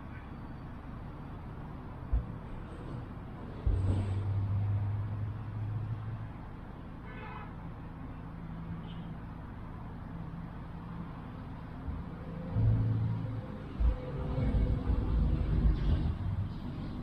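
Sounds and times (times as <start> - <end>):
road traffic rumble: 0.0 - 17.0
low engine hum: 11.6 - 17.0.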